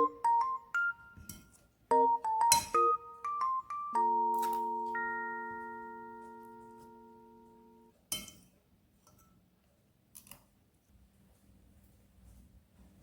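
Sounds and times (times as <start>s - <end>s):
ringing chime tone: 2.0s - 7.8s.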